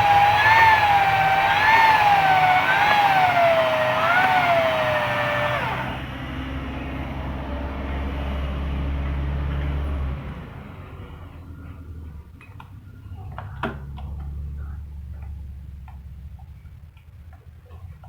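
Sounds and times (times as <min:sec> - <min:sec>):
passing vehicle whine: 0:00.0 - 0:17.0
low steady rumble: 0:10.4 - 0:18.0.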